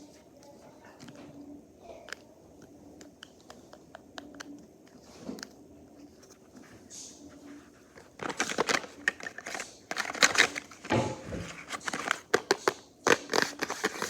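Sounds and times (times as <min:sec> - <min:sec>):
packaging crinkling: 0:07.9 - 0:14.0.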